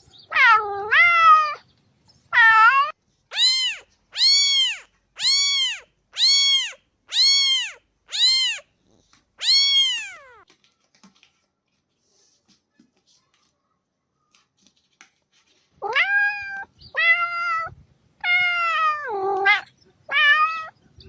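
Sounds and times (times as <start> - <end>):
cat meowing: 0.3 - 1.6, 2.3 - 10.4, 15.8 - 20.8.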